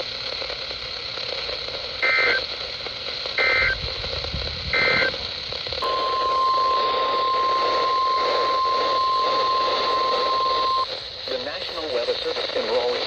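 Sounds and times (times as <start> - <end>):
radio static hiss: 0.0 - 13.0
digital data bursts: 2.0 - 13.0
steady warning alarm tone: 5.8 - 10.9.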